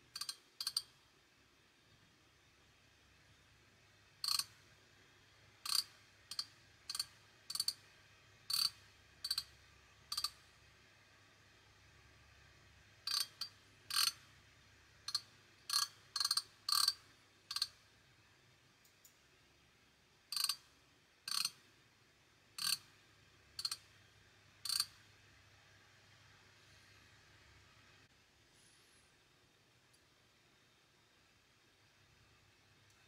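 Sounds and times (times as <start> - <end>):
ratchet handle clicking: 0.2 - 0.9, 5.7 - 7.8, 13.1 - 14.2, 20.3 - 20.6, 21.3 - 21.6, 22.6 - 22.8.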